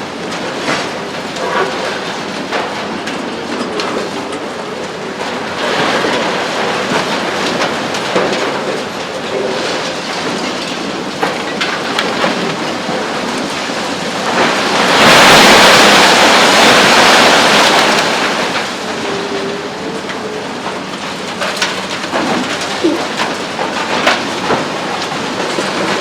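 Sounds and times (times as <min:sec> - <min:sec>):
concrete breaking and debris clatter: 0:05.6 - 0:26.0.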